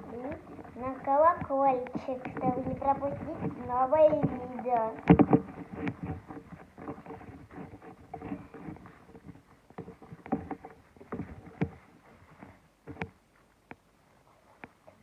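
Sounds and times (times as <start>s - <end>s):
slime squelching in a bowl: 0.0s - 11.4s.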